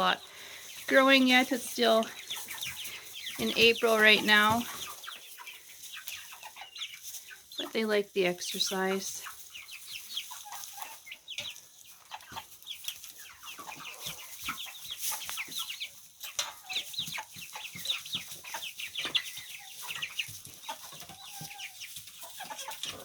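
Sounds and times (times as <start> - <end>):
chicks peeping: 0.0 - 23.0.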